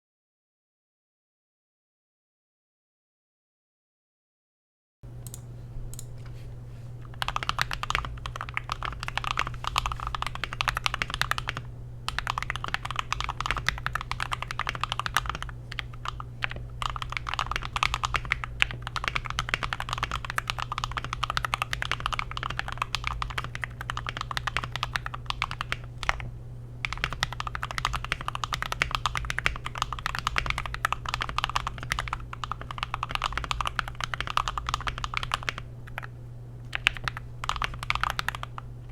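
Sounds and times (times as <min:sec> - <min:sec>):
mechanical keyboard typing: 0:07.1 - 0:36.1, 0:36.7 - 0:38.7.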